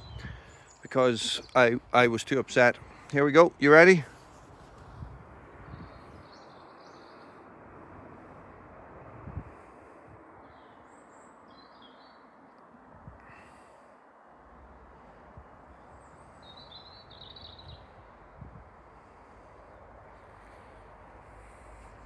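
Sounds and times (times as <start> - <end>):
birds chirping: 0.0 - 4.3, 5.6 - 7.4, 10.4 - 12.4, 15.7 - 18.0.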